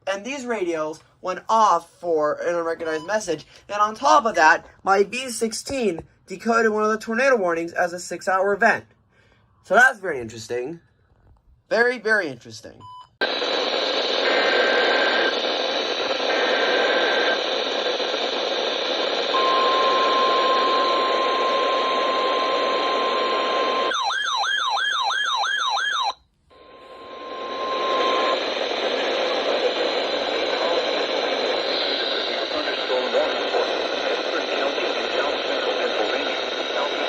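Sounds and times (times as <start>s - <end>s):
radio static hiss: 13.2s - 23.9s, 26.6s - 37.0s
short beeps: 19.4s - 23.9s
fast warbling siren tone: 19.4s - 28.4s.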